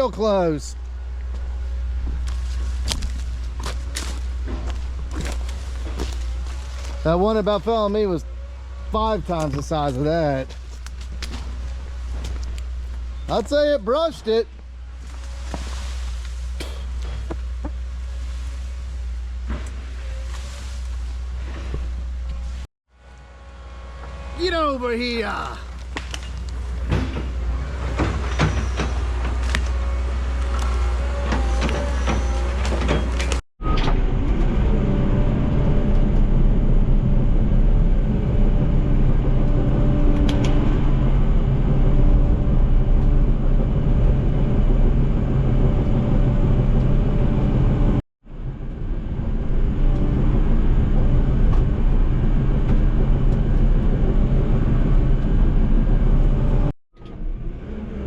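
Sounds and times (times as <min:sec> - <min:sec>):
heavy diesel engine running: 0:00.0 - 0:58.0
knocks and clanks: 0:25.7 - 0:33.4.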